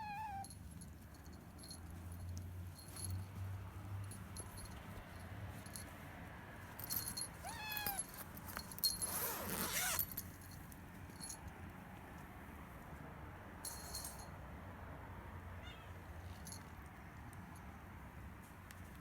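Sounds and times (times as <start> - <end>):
kittens meowing: 0.0 - 0.5, 7.4 - 8.1, 15.6 - 16.0.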